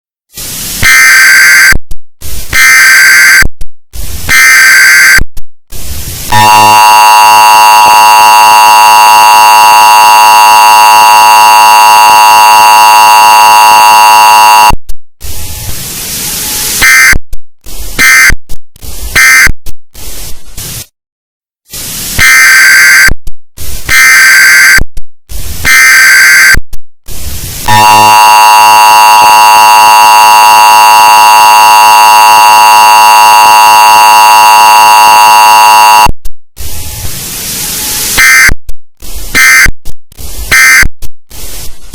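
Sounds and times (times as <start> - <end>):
screeching data tones: 0.8 - 1.8, 4.3 - 5.3
hiss: 15.2 - 16.9.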